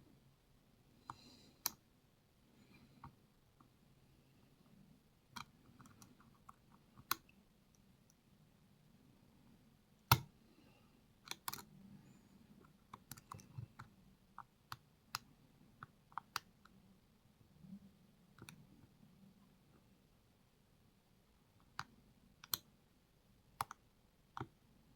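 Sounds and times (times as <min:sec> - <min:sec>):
lock picking clicks: 0:11.3 - 0:11.7.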